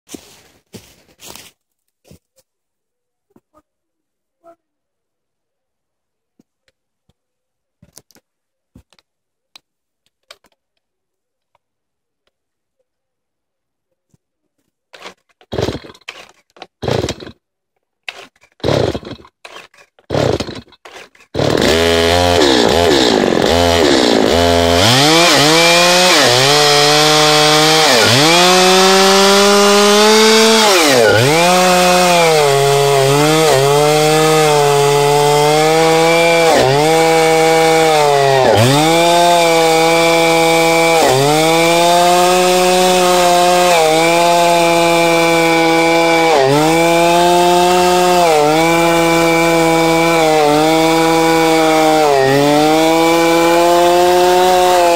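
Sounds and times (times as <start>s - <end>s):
chainsaw ripping log: 14.9s - 54.9s.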